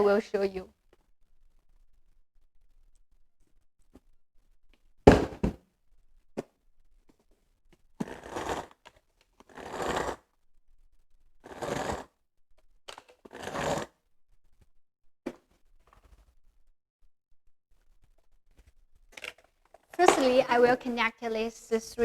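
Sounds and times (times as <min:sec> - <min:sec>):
sharp knocks: 0:05.1 - 0:05.6.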